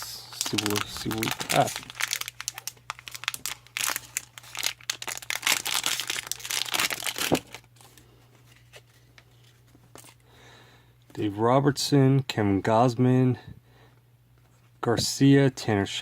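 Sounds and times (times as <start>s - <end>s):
packaging being torn and crinkled: 0.2s - 10.2s.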